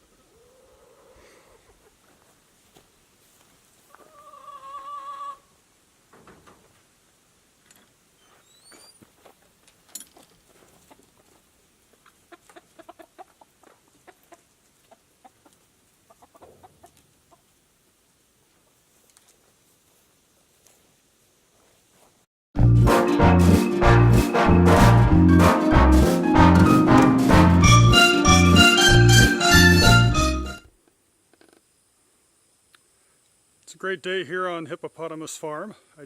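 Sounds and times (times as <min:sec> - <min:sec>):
chickens clucking: 0:00.3 - 0:02.3, 0:03.9 - 0:05.5, 0:10.6 - 0:17.5.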